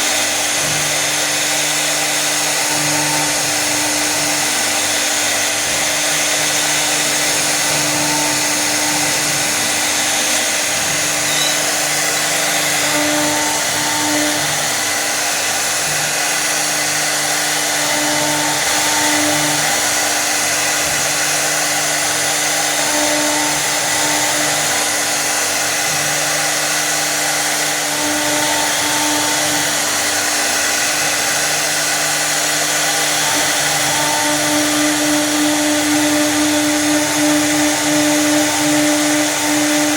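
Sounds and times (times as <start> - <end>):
wood router spindle whine: 0.0 - 39.9
short machine tones: 11.2 - 14.4.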